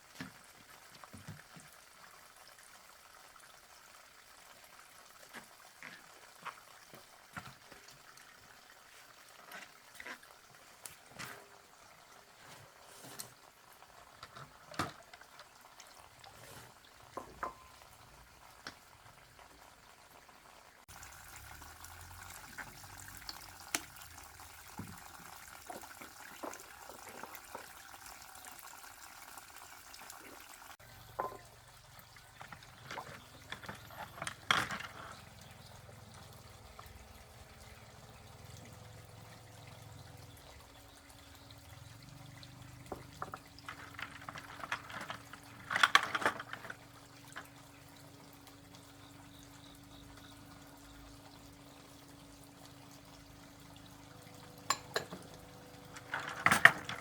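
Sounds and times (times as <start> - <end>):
water trickling and pouring: 0.0 - 57.0
clicks and knocks of handling: 32.4 - 35.3, 42.9 - 47.5.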